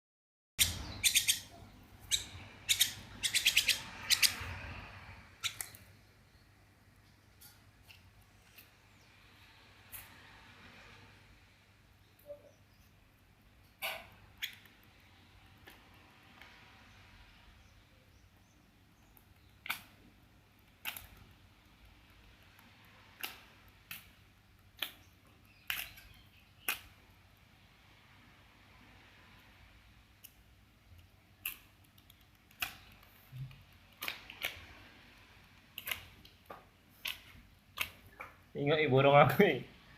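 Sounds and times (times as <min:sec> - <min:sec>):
bird chirping: 0:00.6 - 0:06.6, 0:12.0 - 0:13.0, 0:16.9 - 0:19.9, 0:24.8 - 0:27.0.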